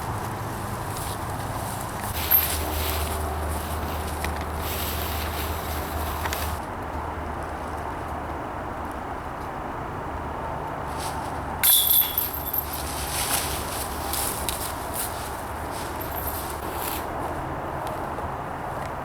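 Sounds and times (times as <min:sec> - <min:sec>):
disc hitting basket chains: 0:02.1 - 0:03.1, 0:11.6 - 0:16.6
chains jingling and rattling: 0:02.2 - 0:03.2, 0:11.6 - 0:16.6.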